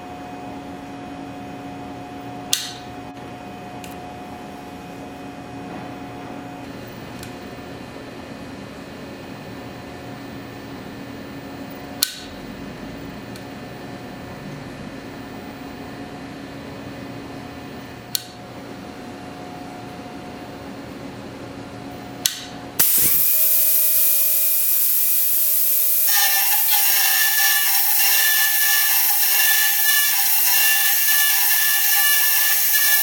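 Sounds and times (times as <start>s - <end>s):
machinery hum: 0.0s - 33.0s
machining spindle hissing: 22.8s - 33.0s
tool whining on metal: 22.8s - 33.0s.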